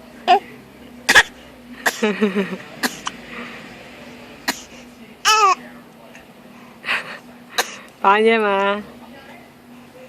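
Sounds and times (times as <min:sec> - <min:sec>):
forced coughs: 0:01.1 - 0:02.2, 0:02.8 - 0:03.2, 0:04.5 - 0:04.8, 0:07.6 - 0:07.8.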